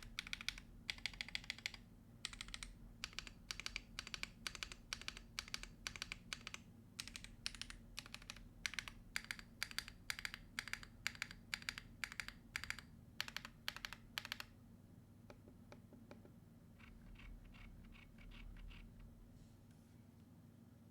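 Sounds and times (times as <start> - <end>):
mechanical keyboard typing: 0.0 - 14.5, 16.8 - 19.0.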